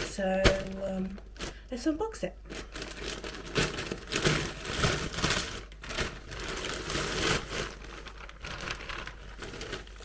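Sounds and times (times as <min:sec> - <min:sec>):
parcel packaging tearing: 0:02.5 - 0:10.0.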